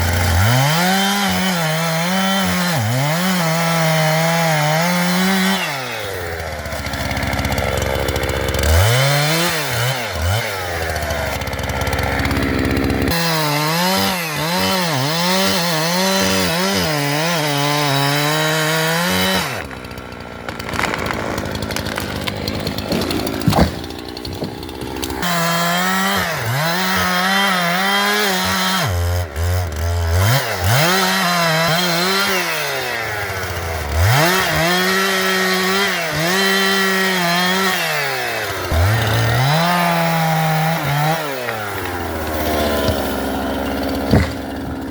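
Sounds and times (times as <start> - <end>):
chainsaw cutting into tree: 0.0 - 44.9
sharp crack: 20.4 - 25.2.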